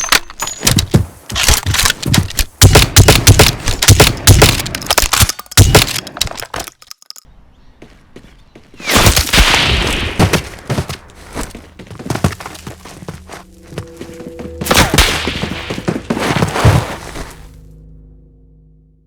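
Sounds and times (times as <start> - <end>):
held musical chord: 12.9 - 14.7, 17.5 - 19.0.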